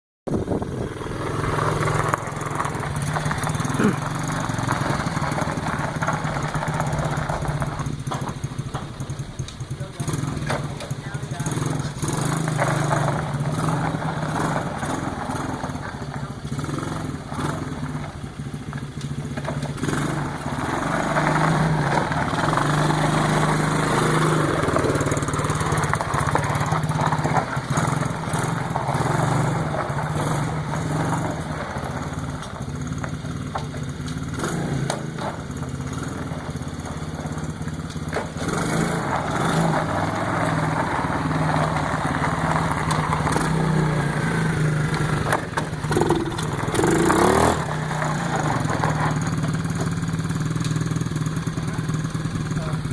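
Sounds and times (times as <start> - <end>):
small atv engine running: 0.3 - 52.9.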